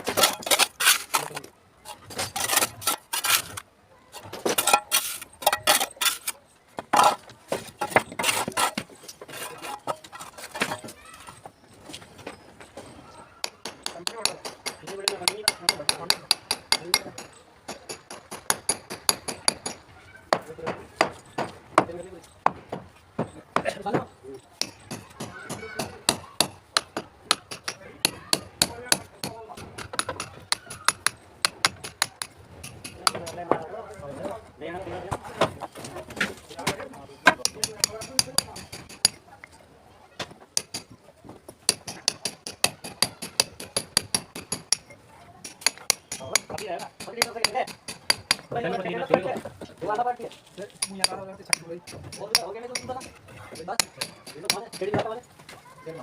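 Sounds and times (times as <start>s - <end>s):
metal tools striking brick: 0.0s - 3.6s, 4.4s - 11.0s, 13.4s - 33.6s, 37.2s - 39.2s, 40.6s - 41.0s, 41.7s - 48.8s, 50.7s - 55.2s.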